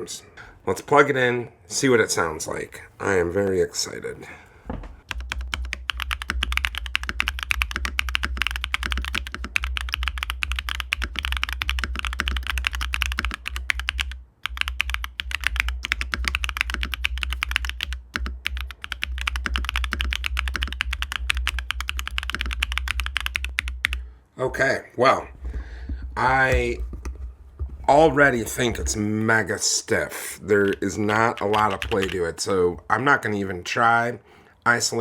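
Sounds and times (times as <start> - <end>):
mechanical keyboard typing: 5.0 - 24.0, 30.5 - 32.4.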